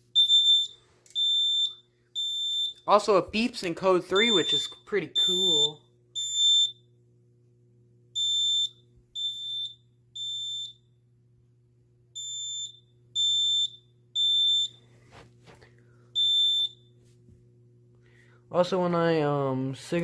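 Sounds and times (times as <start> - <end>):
high-pitched alarm buzzer beeps: 0.1 - 2.9, 4.1 - 6.9, 8.1 - 10.9, 12.2 - 14.9, 16.2 - 16.9.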